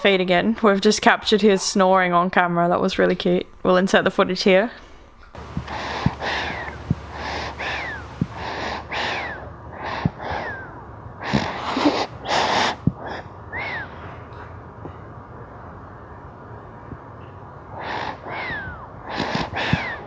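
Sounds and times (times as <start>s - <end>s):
baby snoring: 5.3s - 13.8s, 17.8s - 20.0s.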